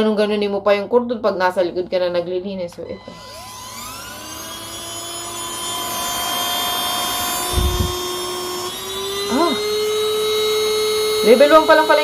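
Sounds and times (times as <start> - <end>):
handheld vacuum motor whine: 2.7 - 12.0
low rumble: 7.5 - 8.2.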